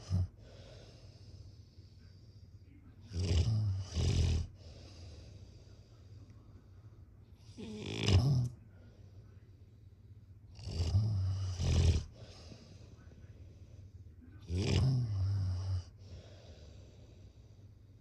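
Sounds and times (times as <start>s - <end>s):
person snoring: 7.6s - 8.5s, 10.6s - 12.3s, 14.4s - 15.9s.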